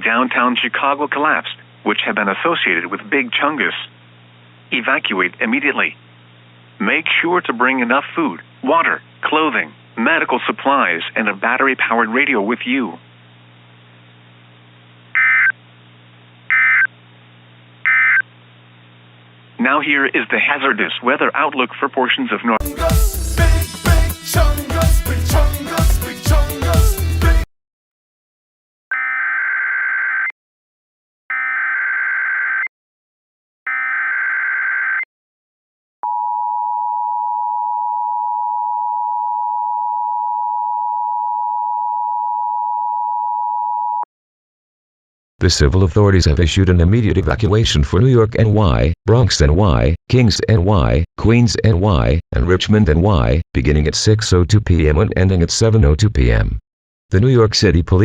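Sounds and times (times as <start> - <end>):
steady low hum: 0.0 - 21.8, 45.4 - 56.6
buzzing data bursts: 15.2 - 15.6.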